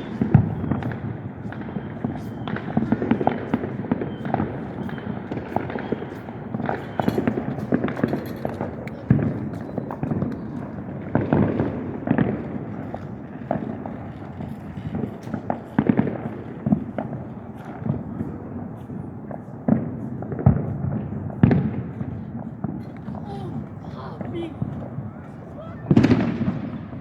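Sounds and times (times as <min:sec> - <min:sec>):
fireworks bangs and crackles: 0:00.0 - 0:27.0.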